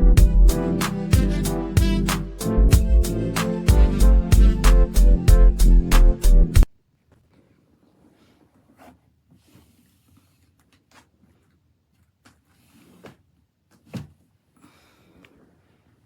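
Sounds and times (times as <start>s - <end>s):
soft rustles: 7.0s - 14.4s.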